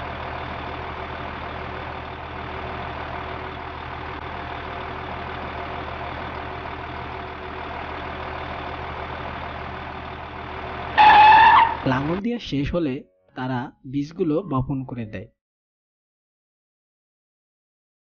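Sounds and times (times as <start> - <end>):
tractor engine humming: 0.0 - 12.2.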